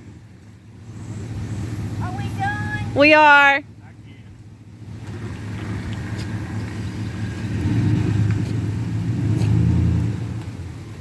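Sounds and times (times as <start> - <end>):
vehicle engine rumbling: 0.0 - 11.0.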